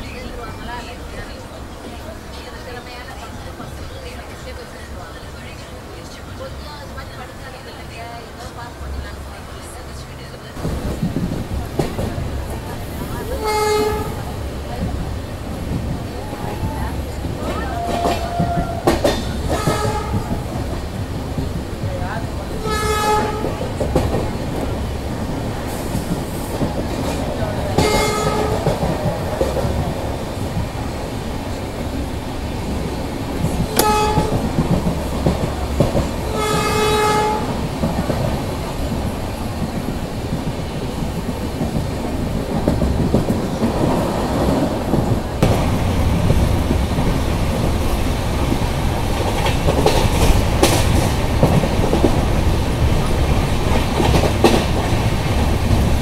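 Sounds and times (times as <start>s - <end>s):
train rumbling on rails: 0.0s - 56.0s
train horn blasts: 13.4s - 14.3s, 18.0s - 20.4s, 22.6s - 23.6s, 27.8s - 28.8s, 33.7s - 34.5s, 36.3s - 37.6s.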